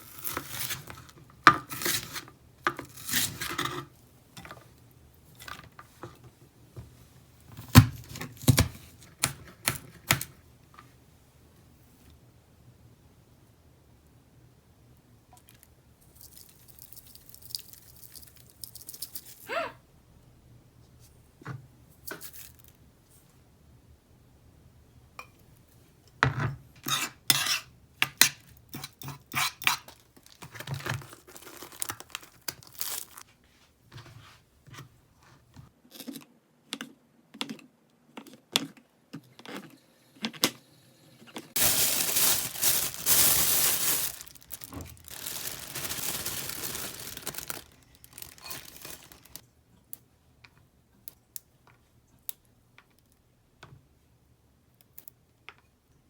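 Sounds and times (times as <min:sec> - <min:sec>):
plastic packaging crinkling: 0:30.0 - 0:33.2, 0:41.5 - 0:49.4.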